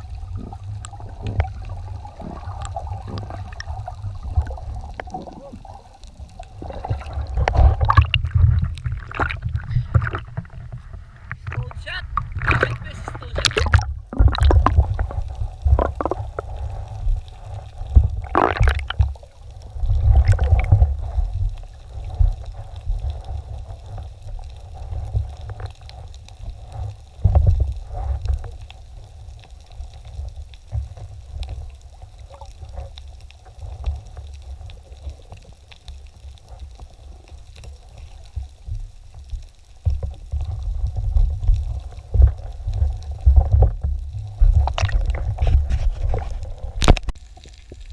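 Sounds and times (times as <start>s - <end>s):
underwater rumble of moving water: 0.0s - 47.9s
water gurgling: 0.0s - 47.9s
bubble pops: 13.4s - 15.0s, 18.2s - 19.0s, 44.6s - 45.2s.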